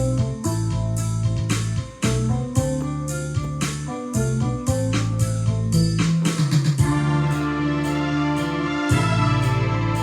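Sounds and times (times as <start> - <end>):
held bass notes: 0.0 - 10.0
keyboard chords: 0.0 - 10.0
drum beat: 1.5 - 7.1.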